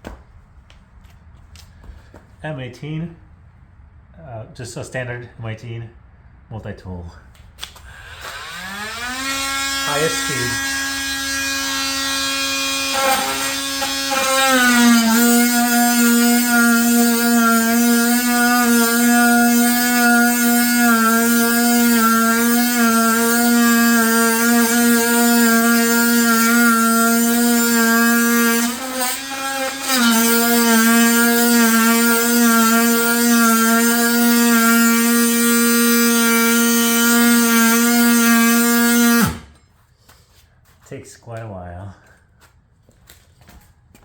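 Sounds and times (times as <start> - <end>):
oscillating multi-tool cutting wood: 7.9 - 39.6.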